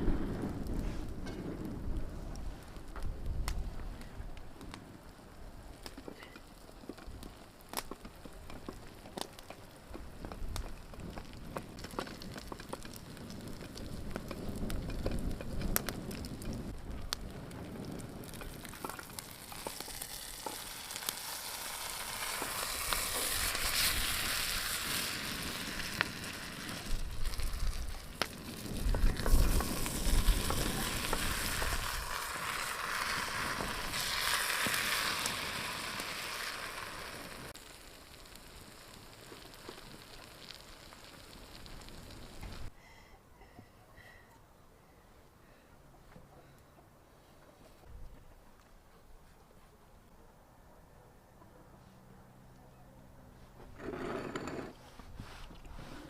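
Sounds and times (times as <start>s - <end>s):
sharp crackles and ticks: 0.1s - 42.7s
food sizzling in a pan: 18.8s - 27.6s, 28.9s - 42.7s.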